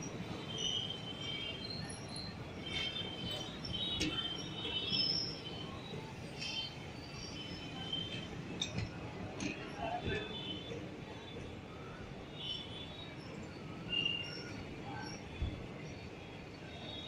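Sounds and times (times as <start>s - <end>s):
train rumbling on rails: 0.0s - 17.0s
high wheel squeals: 0.2s - 8.3s.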